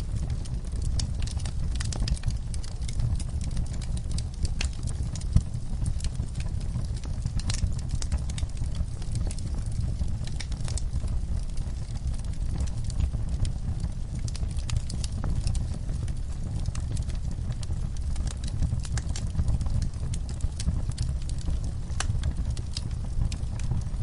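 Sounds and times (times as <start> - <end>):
low steady rumble: 0.0 - 24.0
wood fire crackling: 0.0 - 24.0.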